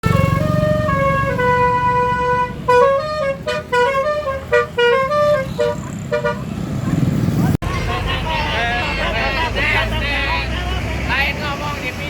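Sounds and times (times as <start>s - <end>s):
air horns playing a tune: 0.0s - 6.4s
low engine rumble: 0.0s - 12.0s.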